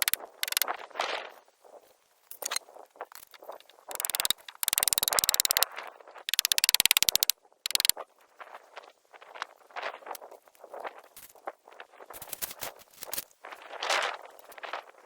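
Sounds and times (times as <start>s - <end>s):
power tool rapid clatter: 0.0s - 0.6s, 3.9s - 5.6s, 6.3s - 7.9s.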